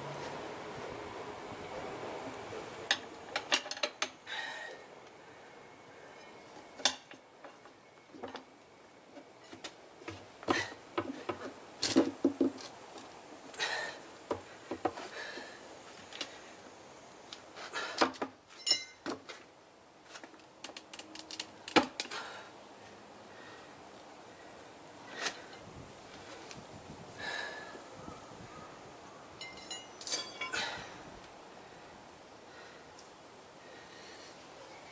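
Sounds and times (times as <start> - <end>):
metal tools clinking on wheel rim: 18.5 - 19.4, 29.4 - 31.0.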